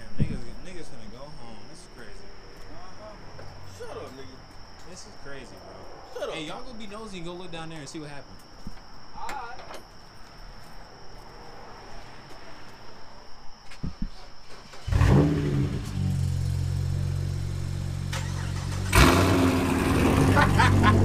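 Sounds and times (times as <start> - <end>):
car engine starting and idling: 14.1 - 21.0
loud engine burst: 14.4 - 17.2, 17.9 - 21.0.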